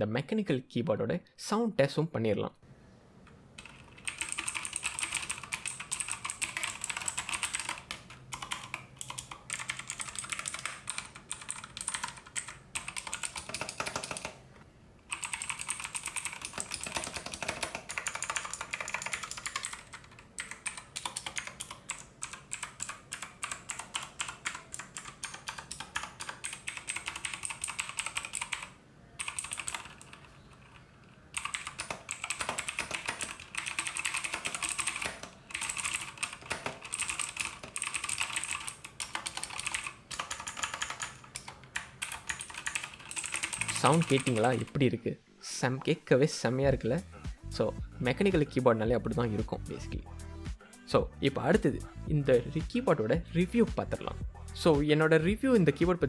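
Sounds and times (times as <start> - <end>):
fast typing on mechanical keyboard: 3.6 - 14.4, 15.1 - 44.7.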